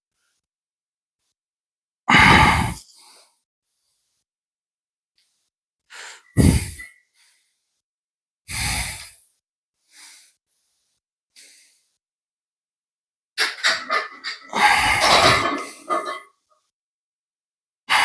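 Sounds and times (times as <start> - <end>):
man breathing hard: 5.9 - 7.7, 8.5 - 9.2.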